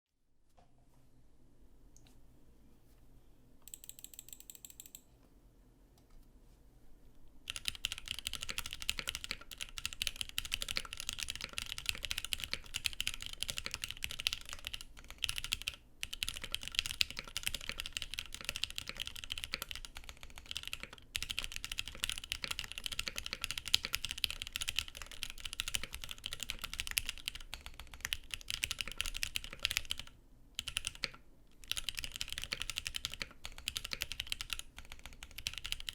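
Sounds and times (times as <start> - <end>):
fast mechanical keyboard typing: 7.5 - 35.9.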